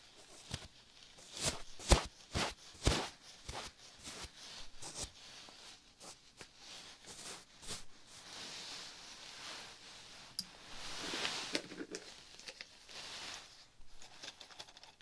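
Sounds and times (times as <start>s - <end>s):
close scratches and taps: 0.3s - 5.1s.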